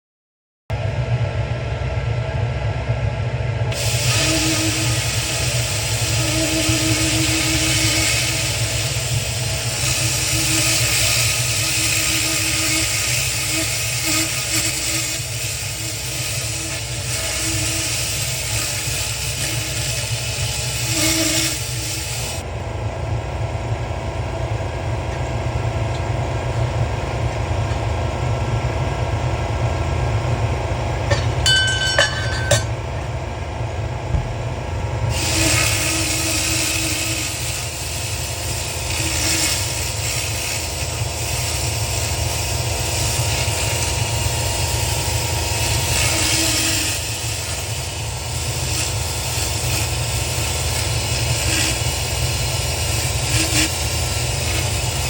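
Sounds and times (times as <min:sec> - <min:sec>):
steady low hum: 0:00.7 - 0:55.0
laser hissing crackle: 0:03.8 - 0:22.4, 0:35.1 - 0:55.0.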